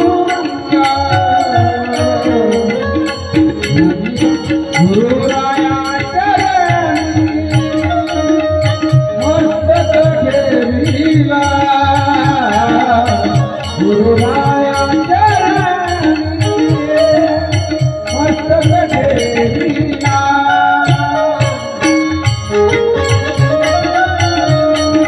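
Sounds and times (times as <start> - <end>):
hand drum: 0.0 - 25.0.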